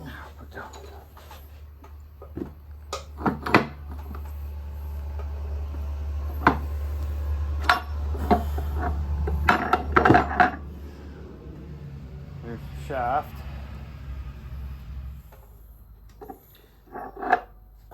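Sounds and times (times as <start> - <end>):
steady low hum: 0.0 - 17.9.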